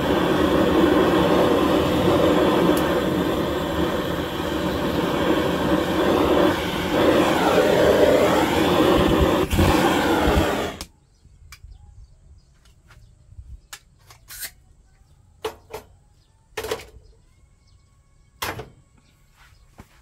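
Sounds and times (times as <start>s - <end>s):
fire crackling and popping: 0.0s - 10.9s
loud steady rushing noise: 0.0s - 10.9s.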